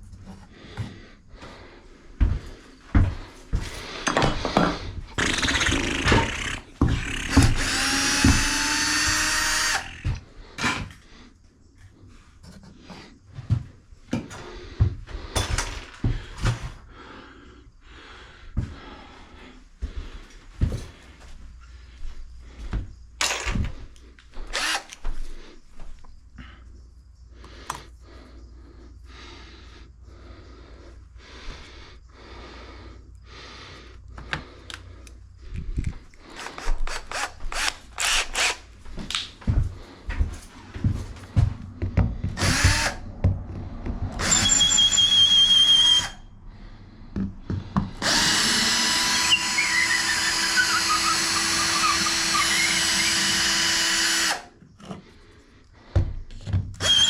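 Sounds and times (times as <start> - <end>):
power drill running: 5.2 - 10.9, 24.5 - 25.0, 36.4 - 38.6, 42.4 - 43.0, 44.2 - 46.2, 48.0 - 54.5, 56.8 - 57.0.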